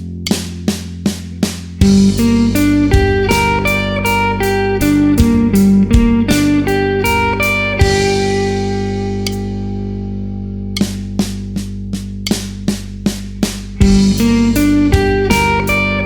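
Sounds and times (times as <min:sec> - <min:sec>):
sustained backing drone: 0:00.0 - 0:16.0
guitar picking arpeggios: 0:01.8 - 0:11.3, 0:13.8 - 0:16.0.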